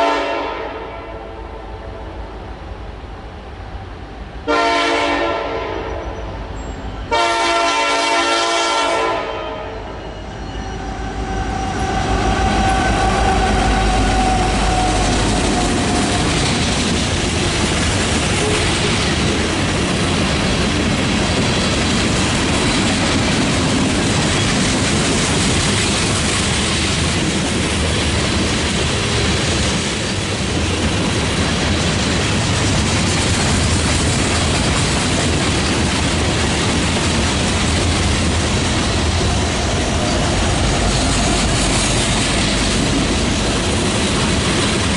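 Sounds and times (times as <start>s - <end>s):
locomotive horn blast: 0.0s - 1.8s, 4.5s - 6.1s, 7.1s - 16.1s, 18.3s - 19.0s
train wheels rumbling on rails: 1.8s - 44.9s.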